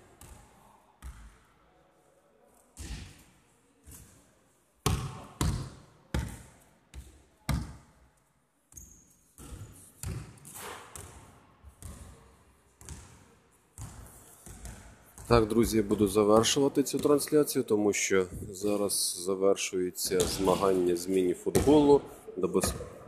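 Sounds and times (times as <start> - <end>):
basketball bouncing on wooden floor: 4.8 - 7.8, 9.4 - 12.1, 12.8 - 13.2, 13.8 - 15.8.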